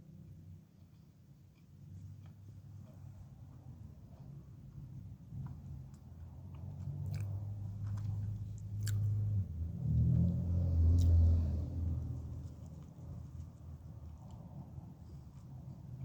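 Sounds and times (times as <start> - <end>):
chewing food: 0.7 - 3.8, 5.4 - 9.2, 9.9 - 11.3.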